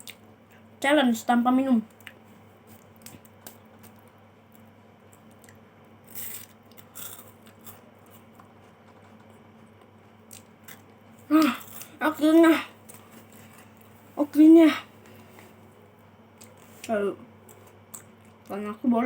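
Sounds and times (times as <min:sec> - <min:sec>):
low steady hum: 0:00.0 - 0:19.0
faint chewing: 0:01.9 - 0:12.0, 0:16.4 - 0:18.5.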